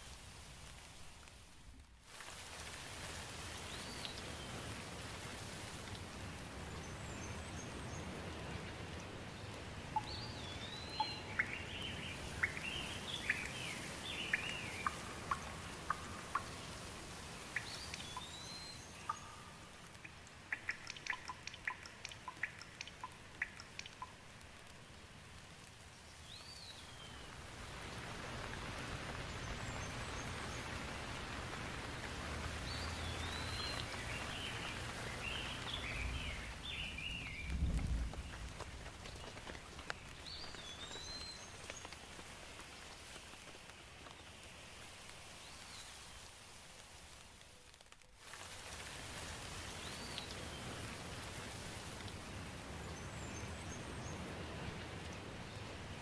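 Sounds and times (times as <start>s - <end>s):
rain falling: 0.0s - 56.0s
birds chirping: 10.0s - 16.8s, 32.6s - 38.5s.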